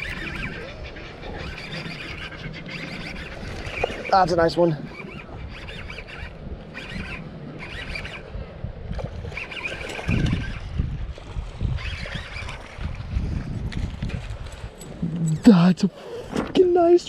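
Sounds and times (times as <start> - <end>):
fishing reel cranking: 0.0 - 8.4, 9.0 - 11.0, 11.7 - 13.1
wind rumble: 0.0 - 16.8.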